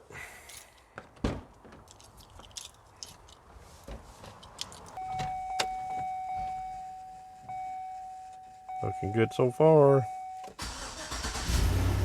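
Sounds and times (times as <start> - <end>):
dashboard warning chime: 5.0 - 10.6.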